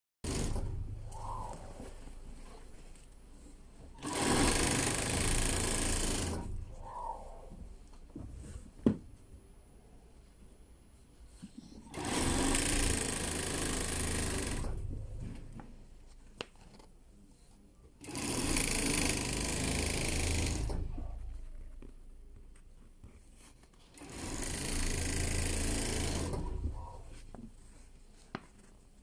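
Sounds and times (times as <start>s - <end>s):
sewing machine running: 0.2s - 1.0s, 4.0s - 6.8s, 11.9s - 15.0s, 18.0s - 21.0s, 23.9s - 27.0s.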